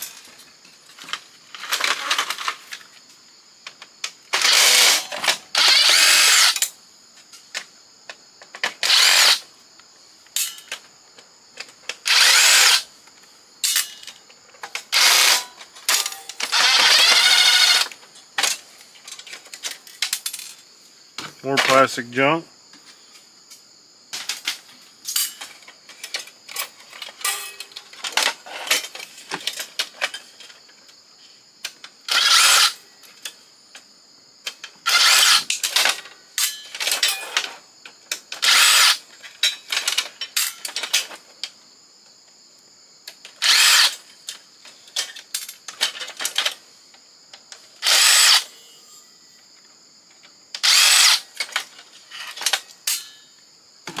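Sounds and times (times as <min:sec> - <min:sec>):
clicks and rattles of parts: 0:00.0 - 0:03.0, 0:03.6 - 0:09.5, 0:10.3 - 0:20.6, 0:24.1 - 0:30.9, 0:31.6 - 0:41.6, 0:43.1 - 0:46.7, 0:47.3 - 0:48.6, 0:50.1 - 0:53.2
cordless drill bursts: 0:04.4 - 0:05.0, 0:05.6 - 0:06.6, 0:08.8 - 0:09.4, 0:12.1 - 0:12.9, 0:15.0 - 0:15.4, 0:16.5 - 0:17.9, 0:32.1 - 0:32.8, 0:34.9 - 0:35.5, 0:38.4 - 0:39.0, 0:43.4 - 0:43.9, 0:47.8 - 0:48.5, 0:50.6 - 0:51.2.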